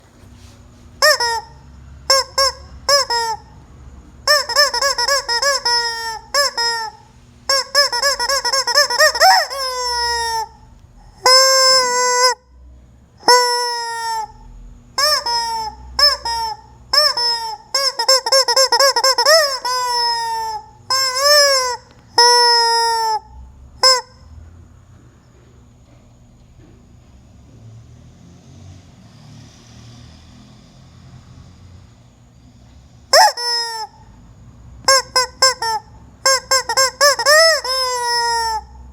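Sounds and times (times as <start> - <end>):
rubber chicken toy squawking: 1.0 - 3.6, 4.2 - 12.4, 13.2 - 14.4, 15.0 - 24.3, 33.1 - 34.0, 34.8 - 38.9.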